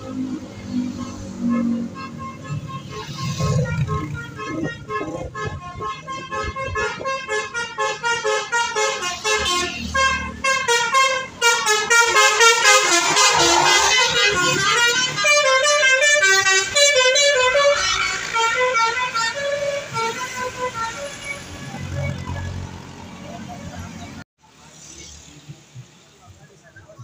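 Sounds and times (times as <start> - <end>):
musical air horn playing a tune: 0.8 - 21.4.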